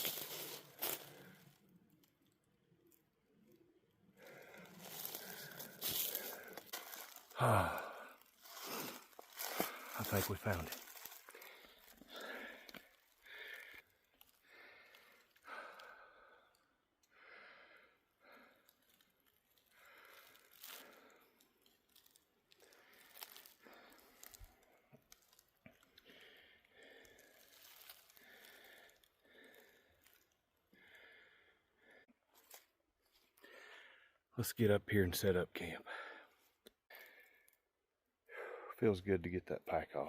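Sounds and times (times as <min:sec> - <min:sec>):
person breathing hard: 0:04.2 - 0:18.6, 0:26.0 - 0:30.1, 0:30.7 - 0:32.2, 0:33.4 - 0:34.2.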